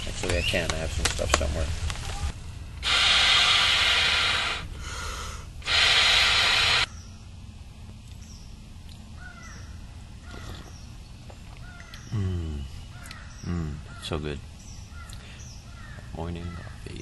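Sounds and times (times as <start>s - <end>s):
birds calling: 0.0s - 17.0s
aerosol can spraying: 5.6s - 6.9s.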